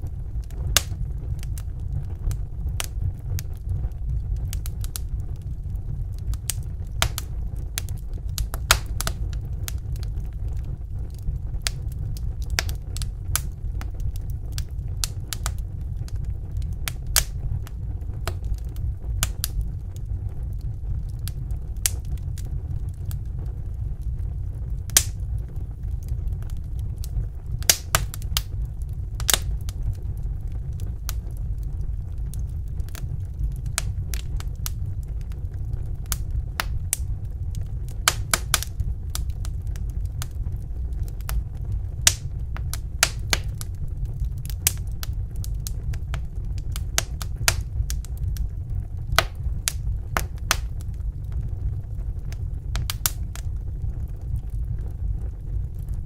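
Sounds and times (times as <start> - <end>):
fire crackling in a fireplace: 0.0 - 56.0
low rumble: 0.0 - 56.0.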